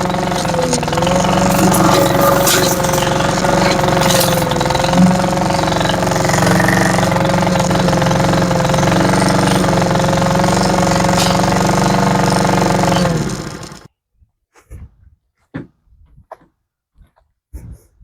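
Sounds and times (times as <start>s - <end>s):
lawn mower engine running: 0.0s - 13.9s.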